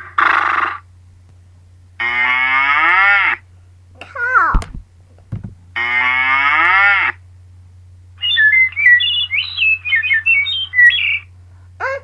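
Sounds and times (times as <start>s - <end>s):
steady low hum: 0.0s - 12.0s
recorded cow moo: 2.0s - 3.4s, 5.8s - 7.2s
recorded bird chirps and whistles: 8.2s - 11.3s.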